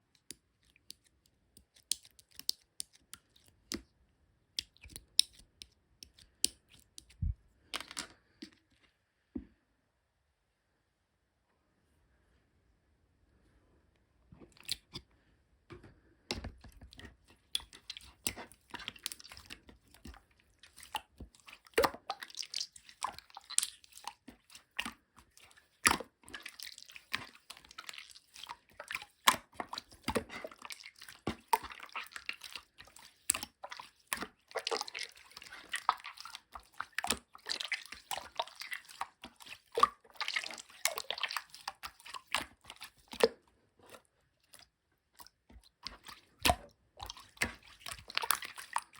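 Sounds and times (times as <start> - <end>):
slime squishing and clicking: 0.1 - 3.9, 4.6 - 7.2, 16.8 - 43.3.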